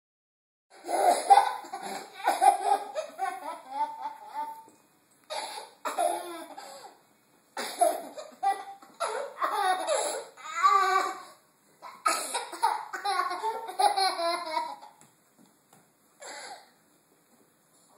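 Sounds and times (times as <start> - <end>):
toddler laughing: 0.8 - 4.7, 7.6 - 11.2, 11.8 - 15.0.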